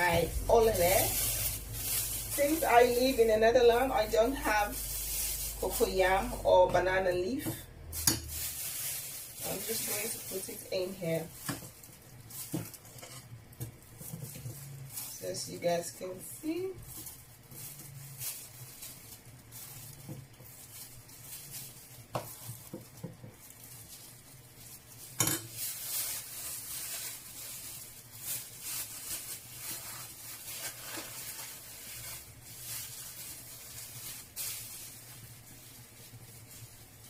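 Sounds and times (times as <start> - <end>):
plastic bag crinkling: 0.0 - 37.0.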